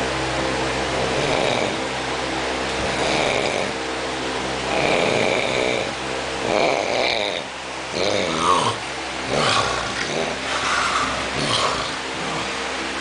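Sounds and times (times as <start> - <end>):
man snoring: 1.0 - 1.9, 2.8 - 3.8, 4.7 - 12.6.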